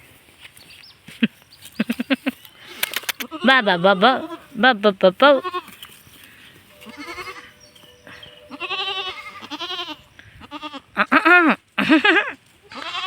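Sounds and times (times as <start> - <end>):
goats bleating: 1.8 - 5.8, 6.8 - 11.6, 12.6 - 13.0.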